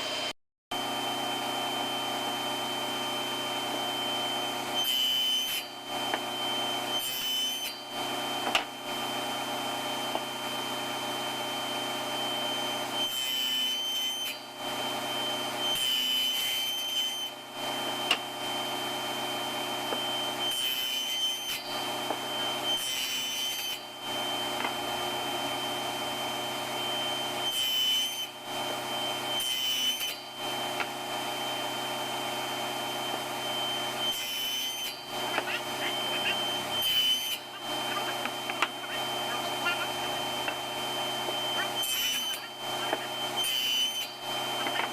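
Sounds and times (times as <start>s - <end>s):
table saw cutting wood: 0.0s - 44.9s.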